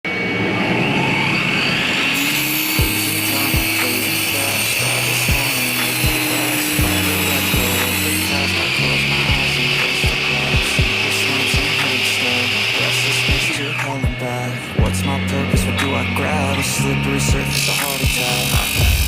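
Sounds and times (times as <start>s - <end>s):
pop music with drum beat: 2.8s - 4.6s, 5.2s - 12.5s, 13.2s - 16.2s, 16.8s - 19.0s.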